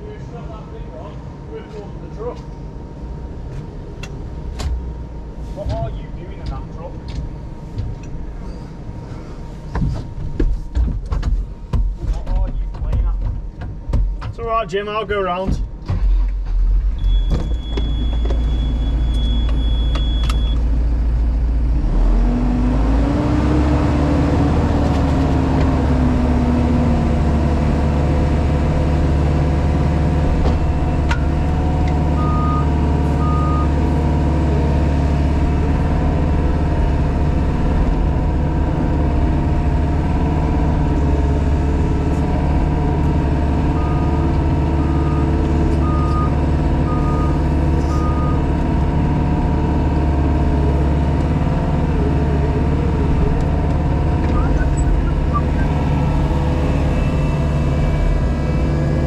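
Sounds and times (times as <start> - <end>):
diesel engine and hydraulics: 0.0 - 59.0
reversing alarm beeps: 17.0 - 20.6, 32.2 - 33.7, 44.8 - 48.4.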